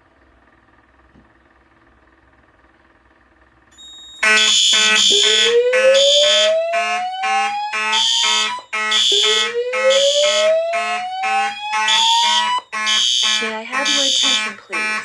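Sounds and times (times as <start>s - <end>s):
pulsing mechanical alarm horn: 4.1s - 15.0s
rising whoop alarm tone: 4.2s - 15.0s.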